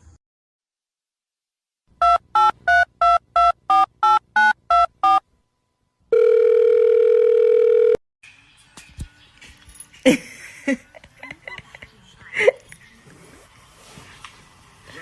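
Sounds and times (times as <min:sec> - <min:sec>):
steady loud telephone tone: 0:06.1 - 0:08.0.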